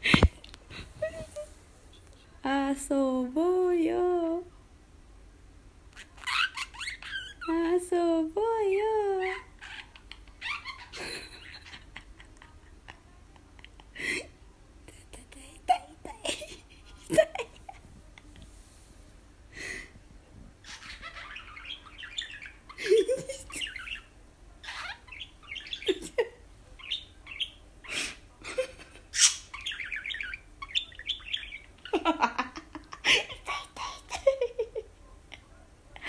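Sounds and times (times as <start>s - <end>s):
budgerigar chattering and warbling: 20.6s - 22.8s, 23.4s - 26.2s, 26.8s - 28.0s, 29.1s - 31.9s.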